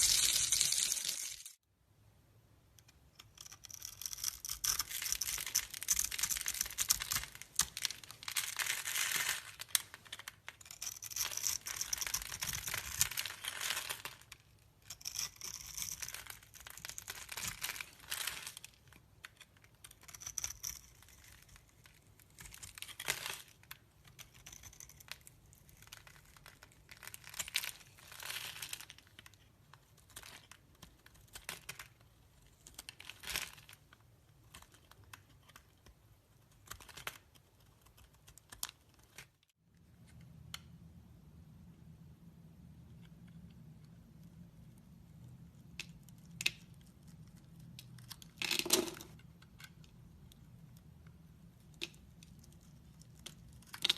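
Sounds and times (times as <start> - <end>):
knife cutting soap crackling: 2.8 - 39.3.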